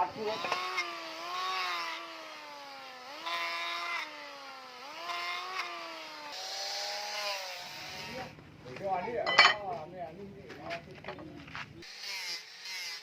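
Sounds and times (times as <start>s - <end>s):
power tool motor running: 0.0s - 8.4s, 11.8s - 13.0s.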